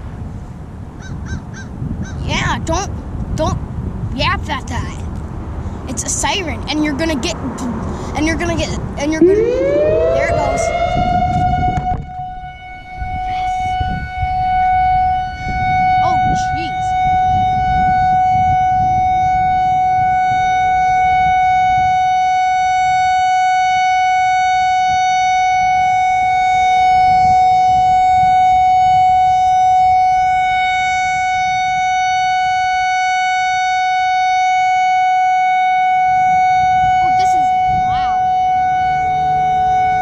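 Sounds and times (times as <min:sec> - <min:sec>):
distant lower siren tone: 0:09.0 - 0:40.0
outdoor warning siren steady tone: 0:09.0 - 0:40.0.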